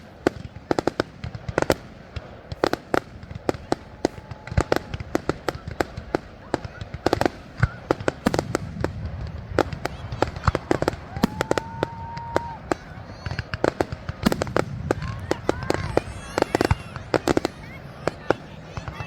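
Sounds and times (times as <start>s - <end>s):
fireworks cracking and popping: 0.0s - 19.0s
low rumble of booms: 8.3s - 9.9s.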